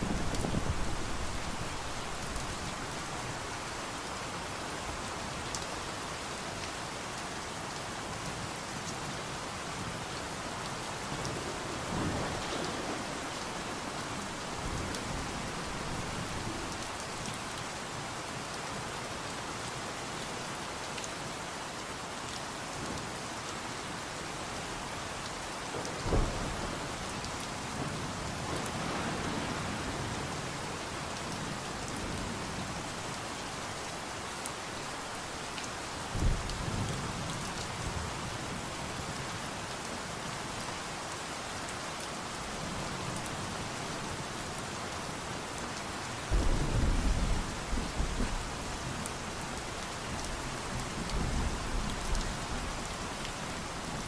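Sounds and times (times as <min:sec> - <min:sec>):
thunder rumbling: 0:00.0 - 0:02.8, 0:11.0 - 0:16.6, 0:26.0 - 0:27.0, 0:46.3 - 0:48.7
steady rain hissing: 0:00.0 - 0:54.0.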